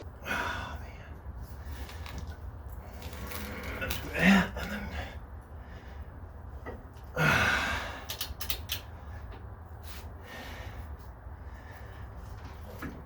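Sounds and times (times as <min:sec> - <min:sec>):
person exhaling with effort: 0:07.1 - 0:08.2
wrench metallic clicks: 0:08.1 - 0:08.9.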